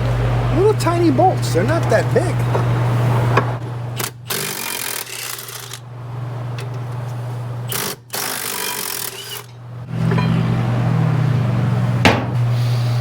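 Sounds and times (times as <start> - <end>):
power wrench spinning bolts: 4.0 - 5.8, 7.7 - 9.6.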